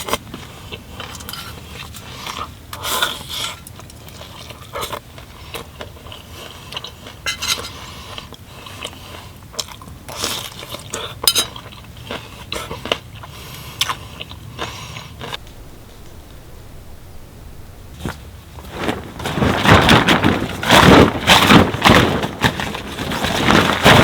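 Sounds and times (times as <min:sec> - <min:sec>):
person chewing crunchy food: 0:04.0 - 0:15.4
cutlery clinking on dishes: 0:11.2 - 0:11.6.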